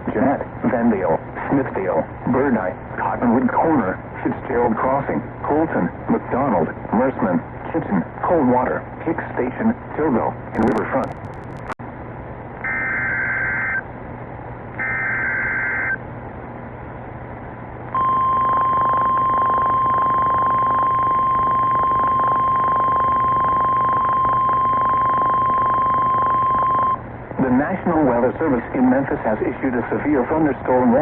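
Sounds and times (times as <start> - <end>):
radio hiss: 10.6 - 11.8
steady warning alarm tone: 10.6 - 11.8, 18.0 - 27.0
warbling digital header tones: 10.6 - 11.8.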